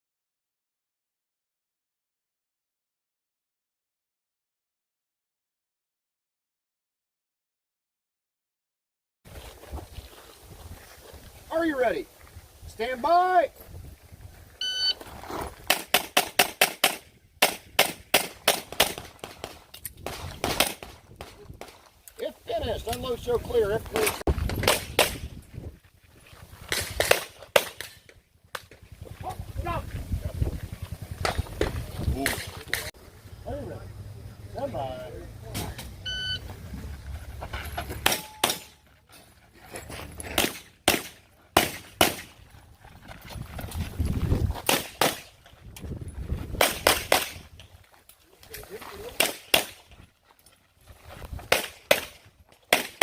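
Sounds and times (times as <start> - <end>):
handgun shots: 15.7 - 21.7, 38.0 - 38.8, 40.3 - 42.3, 44.7 - 45.3, 46.6 - 47.4, 49.1 - 49.8.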